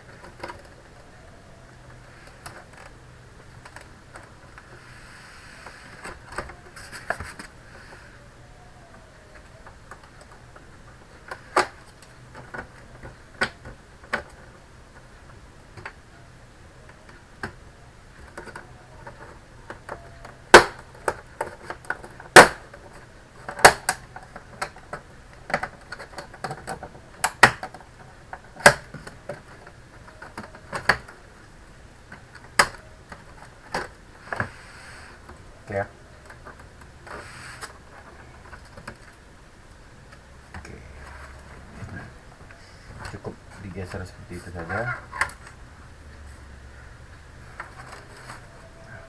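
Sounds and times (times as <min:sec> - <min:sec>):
plastic parts clicking and knocking: 0:16.9 - 0:31.2.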